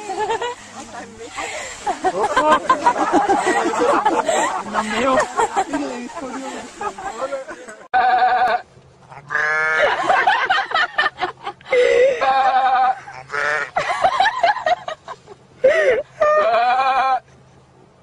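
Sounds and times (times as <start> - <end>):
goats bleating: 8.0 - 10.0, 12.2 - 13.8, 16.3 - 17.2.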